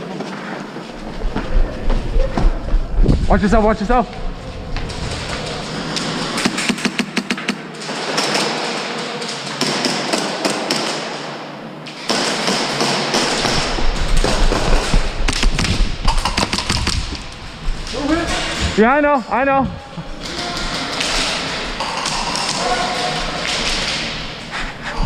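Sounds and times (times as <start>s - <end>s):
airsoft guns firing: 6.3s - 11.4s, 12.0s - 17.4s.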